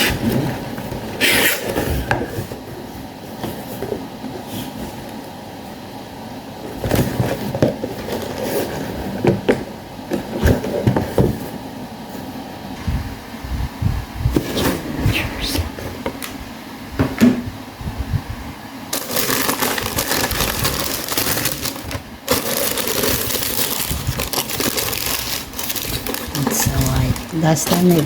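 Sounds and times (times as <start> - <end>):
packaging crinkling and rustling: 6.7 - 9.5, 18.9 - 28.0.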